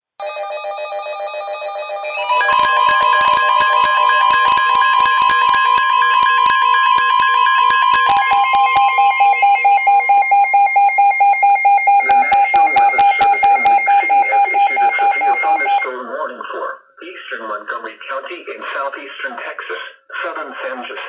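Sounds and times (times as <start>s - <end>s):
steady alert tone: 1.6s - 15.9s
radio alarm beeps: 1.9s - 15.9s
rapid pulsing beep: 2.2s - 15.9s
faint broadcast voice: 11.9s - 21.0s.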